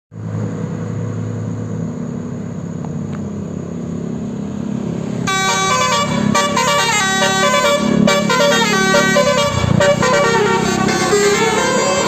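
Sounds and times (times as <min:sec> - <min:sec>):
bus engine drone: 0:00.1 - 0:12.0
multi-tone horn playing a tune: 0:05.3 - 0:12.0.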